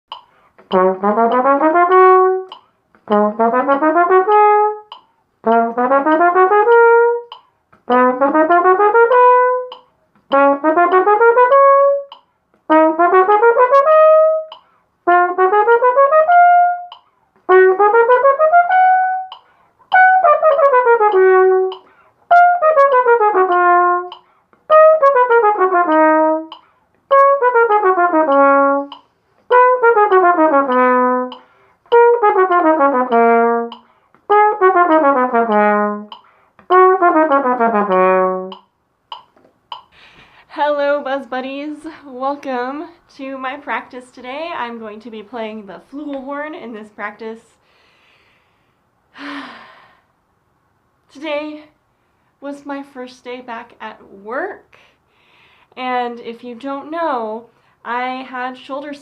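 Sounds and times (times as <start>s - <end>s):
flugelhorn playing runs: 0.7s - 38.6s.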